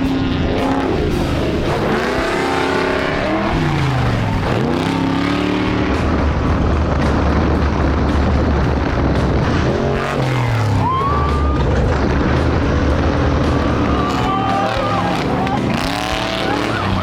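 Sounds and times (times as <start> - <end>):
race vehicle engine revving: 0.0 - 17.0.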